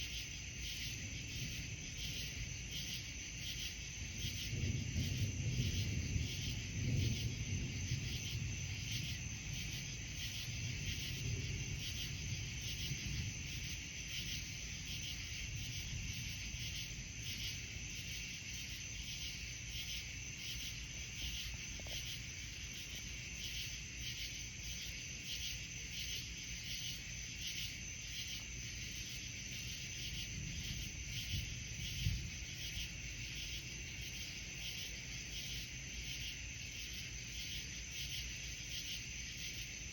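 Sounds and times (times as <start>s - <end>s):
crickets chirping: 0.0s - 39.9s
distant thunder rumble: 0.7s - 19.4s, 29.5s - 35.6s.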